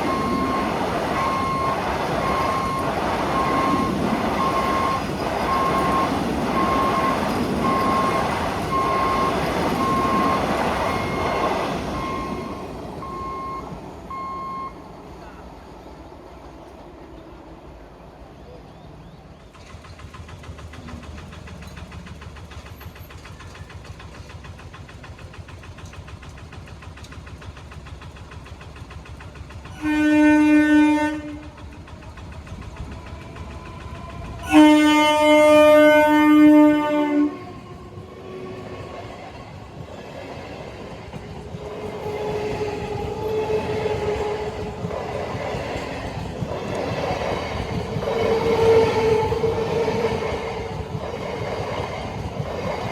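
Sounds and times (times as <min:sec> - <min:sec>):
train rumble: 0:00.0 - 0:52.9
train horn blasts: 0:29.8 - 0:31.6, 0:33.6 - 0:39.0, 0:41.4 - 0:44.9, 0:48.0 - 0:50.7.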